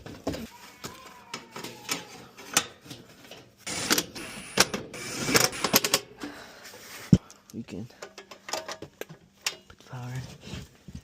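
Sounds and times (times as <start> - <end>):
tools clicking and knocking: 7.2 - 9.8.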